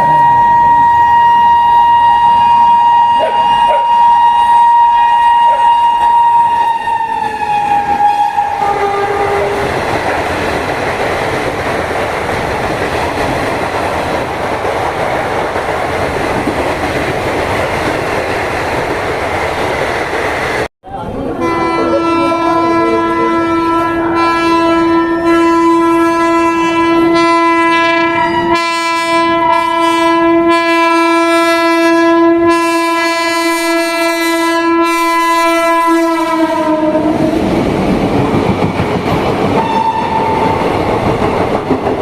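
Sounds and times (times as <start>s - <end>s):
locomotive horn blast: 0.0s - 9.7s, 21.3s - 37.5s, 39.6s - 40.4s
train wheels clacking over rail joints: 37.4s - 42.0s.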